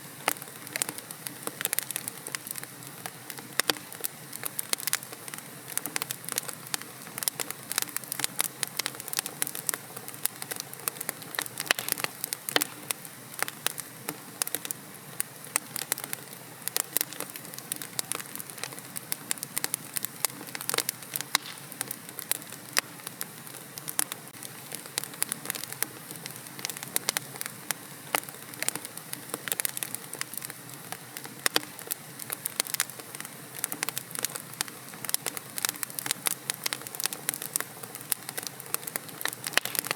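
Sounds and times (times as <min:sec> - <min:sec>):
wood fire crackling and popping: 0:00.0 - 0:39.9.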